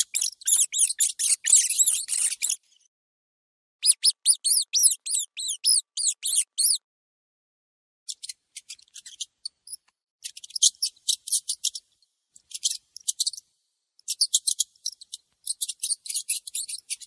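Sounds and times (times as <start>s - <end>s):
mouse squeaking: 0.0s - 2.6s, 3.8s - 6.8s, 8.1s - 11.8s, 14.1s - 17.0s.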